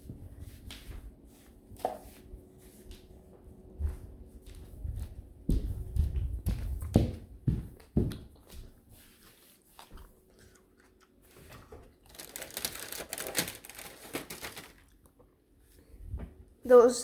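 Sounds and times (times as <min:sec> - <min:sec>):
crinkling and rustling: 0:06.5 - 0:16.4.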